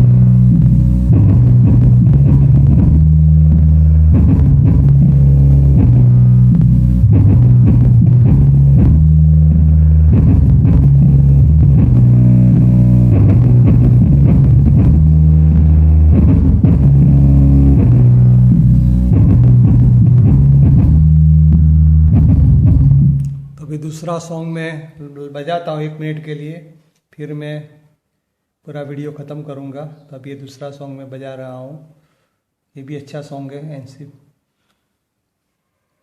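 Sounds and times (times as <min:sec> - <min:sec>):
drum beats: 0:00.0 - 0:23.6
song with deep bass: 0:00.0 - 0:23.7.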